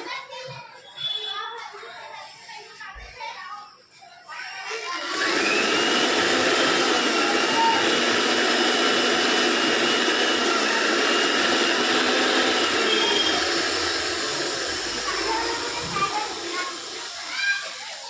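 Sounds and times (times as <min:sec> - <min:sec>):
mixer grinder motor whining: 0:04.7 - 0:18.0.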